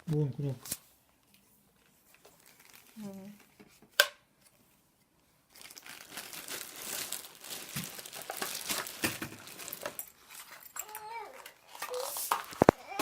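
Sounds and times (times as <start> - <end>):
plastic packaging crinkling: 2.2 - 3.6, 5.5 - 12.8.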